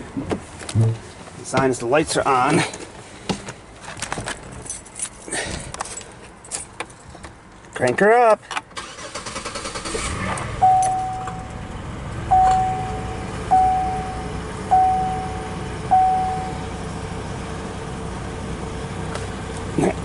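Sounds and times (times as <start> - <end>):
car engine idling: 8.8 - 20.0
dashboard warning chime: 10.6 - 16.8.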